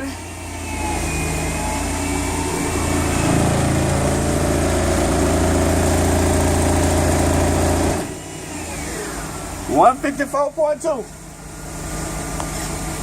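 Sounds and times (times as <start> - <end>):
dense buzz: 0.0 - 9.9
loud subwoofer bass tone: 1.3 - 8.1.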